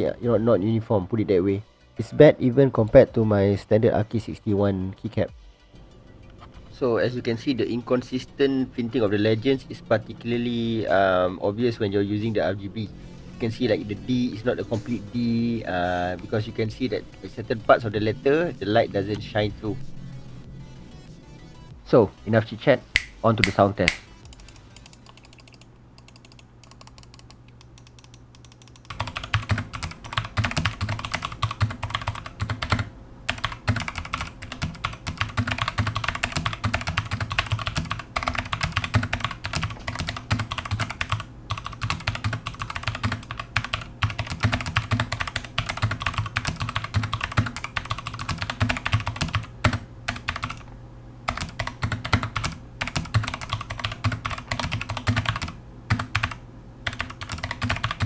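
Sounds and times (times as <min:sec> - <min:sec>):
mechanical keyboard typing: 0:23.4 - 0:50.6, 0:51.3 - 0:58.0.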